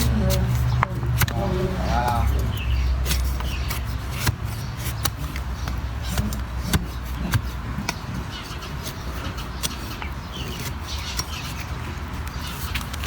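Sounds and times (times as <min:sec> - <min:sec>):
low steady hum: 0:00.0 - 0:08.5
hoof-trimming tools clicking: 0:00.0 - 0:13.0.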